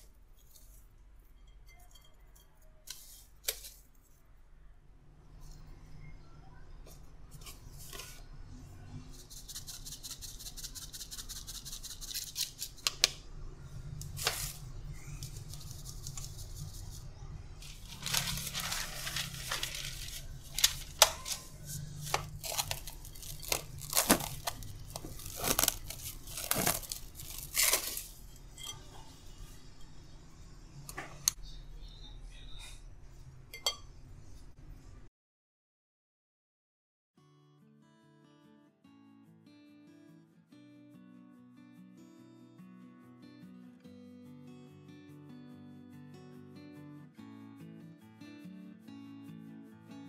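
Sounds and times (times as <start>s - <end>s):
fine scraping or rustling: 17.6s - 29.6s.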